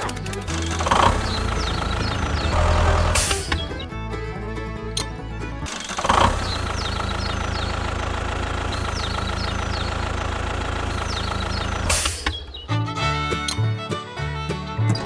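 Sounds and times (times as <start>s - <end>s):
small motor whining: 0.0s - 3.9s, 5.7s - 12.6s
music: 0.0s - 7.0s, 12.6s - 15.0s.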